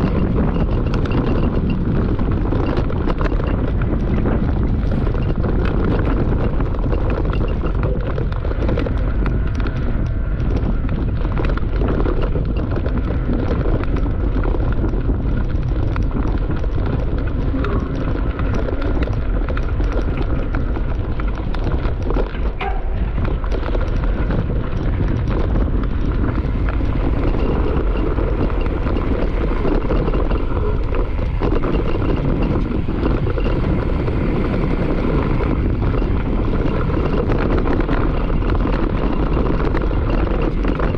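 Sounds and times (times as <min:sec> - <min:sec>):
bike chain and frame rattling: 0:00.0 - 0:40.9
bike tyres rolling over dirt: 0:00.0 - 0:40.9
wind buffeting microphone: 0:00.0 - 0:40.9.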